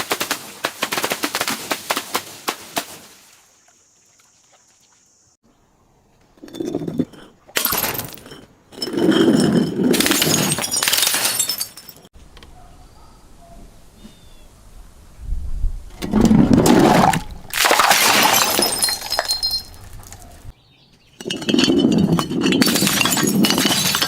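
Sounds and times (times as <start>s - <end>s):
glass crunching and cracking: 17.5s - 20.4s, 21.2s - 24.0s.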